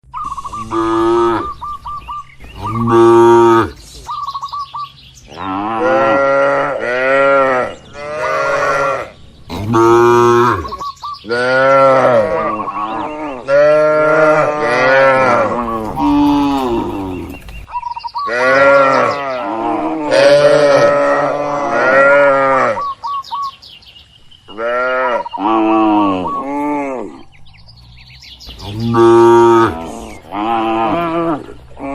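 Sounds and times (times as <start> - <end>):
cattle mooing: 0.5 - 1.6, 2.6 - 3.8, 5.3 - 17.4, 18.3 - 22.9, 28.6 - 31.9.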